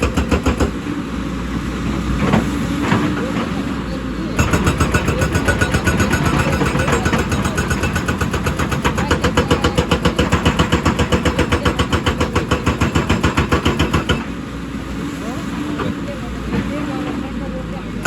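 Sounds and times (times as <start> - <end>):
hydraulic breaker hammering rock: 0.0 - 1.0, 4.4 - 14.4
diesel engine running: 0.0 - 18.0.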